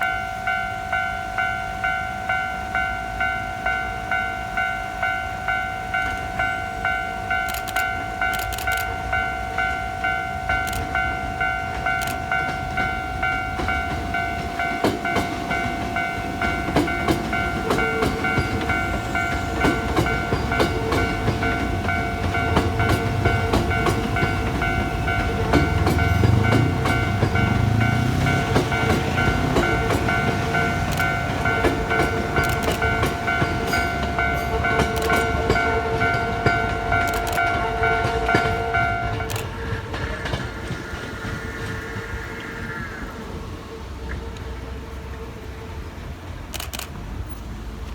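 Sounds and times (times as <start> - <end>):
crossing warning signal: 0.0 - 46.9
electric train passing: 0.0 - 47.9
wheels clicking over rail joints: 7.3 - 42.6.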